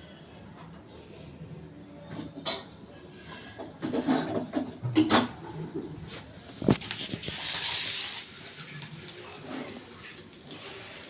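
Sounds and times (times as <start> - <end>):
dishes and utensils clinking: 2.2 - 5.8.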